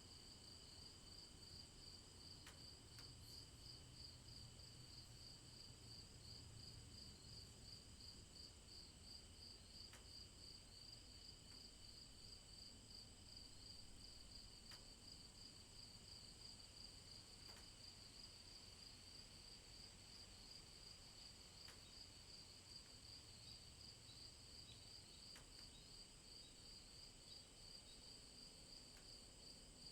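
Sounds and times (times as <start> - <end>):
crickets chirping: 0.1 - 29.9
soft ticks: 14.7 - 14.9, 17.5 - 17.7, 21.6 - 21.8.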